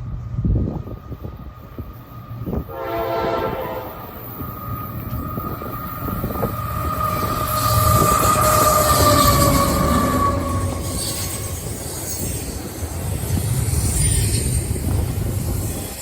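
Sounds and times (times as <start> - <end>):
train rumbling past: 0.0 - 16.0
locomotive air horn blast: 2.7 - 4.2
wheel squeal: 4.2 - 16.0.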